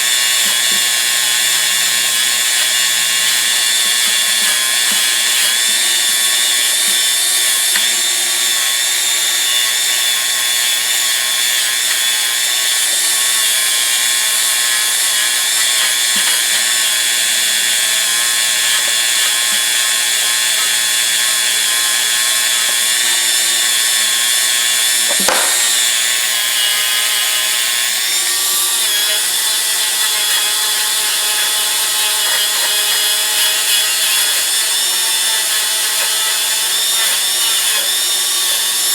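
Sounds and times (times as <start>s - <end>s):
bench grinder grinding steel: 0.0s - 38.9s
sharp knock: 25.1s - 25.8s.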